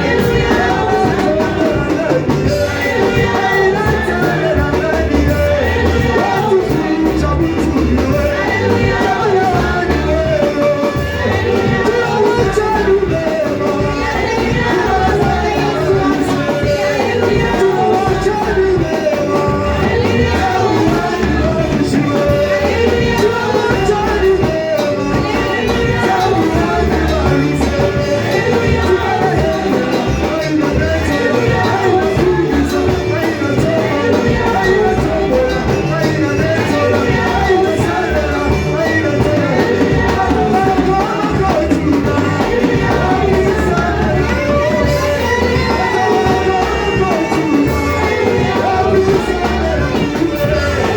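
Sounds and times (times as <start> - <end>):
instrumental backing with bass: 0.0 - 50.9
voices singing worship music: 0.0 - 50.9.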